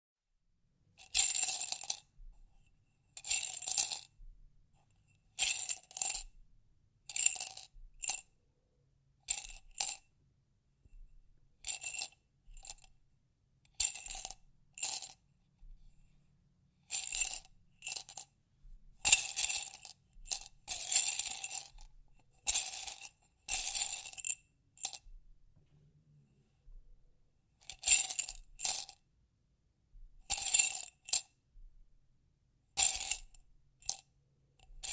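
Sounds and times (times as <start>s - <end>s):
object rattling in glass jar: 16.9s - 18.2s, 19.0s - 21.8s.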